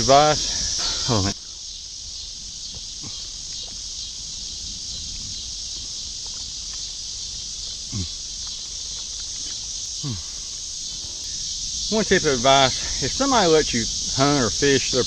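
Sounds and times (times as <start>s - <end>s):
high-pitched insect chorus: 0.0s - 15.0s.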